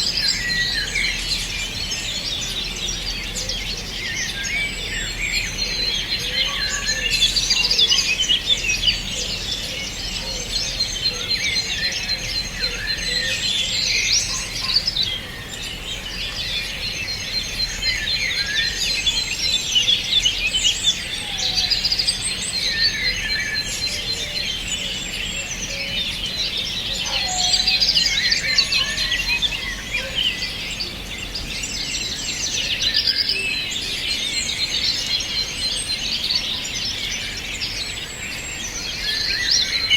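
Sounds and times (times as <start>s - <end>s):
songbirds chirping chorus: 0.0s - 39.9s.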